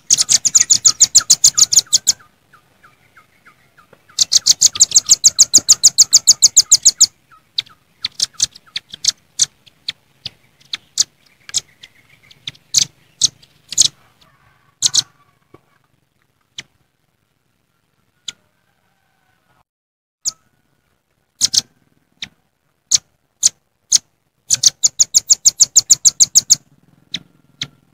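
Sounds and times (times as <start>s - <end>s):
birds calling with sharp trills: 0.0s - 15.5s, 20.2s - 20.5s, 21.4s - 27.9s.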